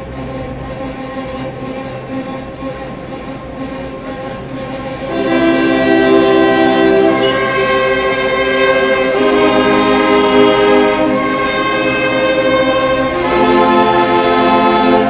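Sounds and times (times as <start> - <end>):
orchestra playing held chords: 0.0 - 15.0.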